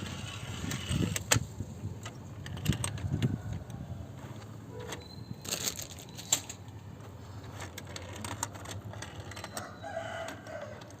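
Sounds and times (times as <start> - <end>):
toy race track clicking and rattling: 7.5 - 11.0.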